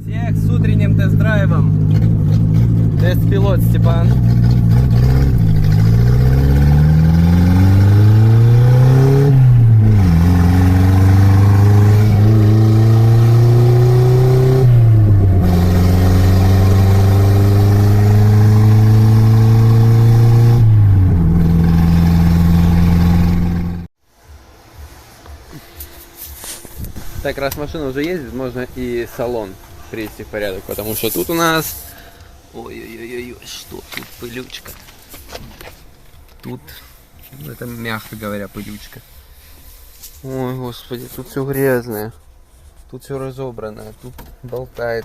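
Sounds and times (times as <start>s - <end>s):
car engine accelerating through gears: 0.5s - 23.9s.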